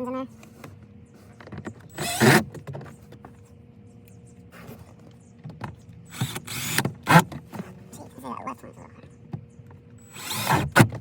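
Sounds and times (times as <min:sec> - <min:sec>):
power drill whining: 0:01.9 - 0:02.4, 0:06.1 - 0:06.8, 0:10.0 - 0:10.8.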